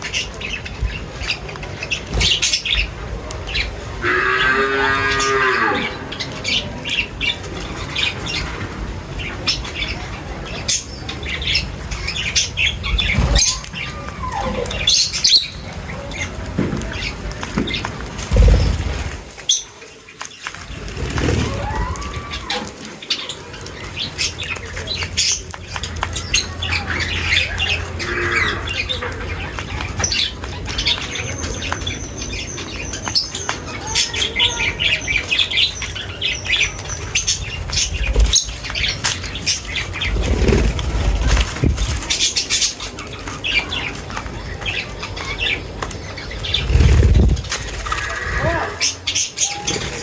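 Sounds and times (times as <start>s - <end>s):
small birds chirping: 0.0s - 50.0s
bird wing flutters: 18.2s - 19.5s, 20.5s - 22.8s, 37.8s - 42.9s, 46.4s - 48.4s
dull low bumps: 37.6s - 42.1s, 46.4s - 48.0s.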